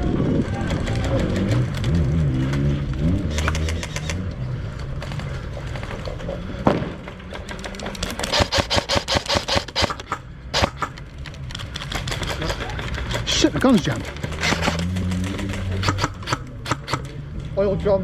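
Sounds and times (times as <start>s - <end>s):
airsoft gun rapid fire: 3.3s - 4.2s, 8.0s - 11.0s, 11.9s - 17.1s
sharp crack: 7.8s - 17.2s.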